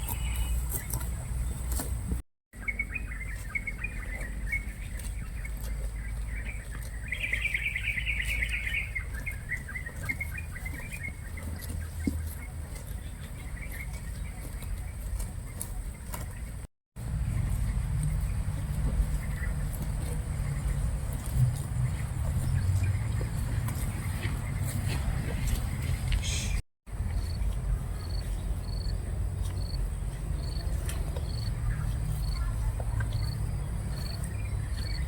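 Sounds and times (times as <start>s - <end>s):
bird chirping: 0.0s - 1.8s, 2.6s - 16.6s.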